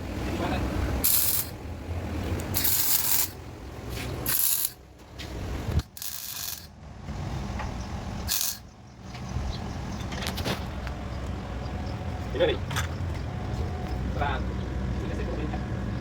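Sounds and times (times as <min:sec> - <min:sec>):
welder hissing bursts: 0:02.6 - 0:03.3.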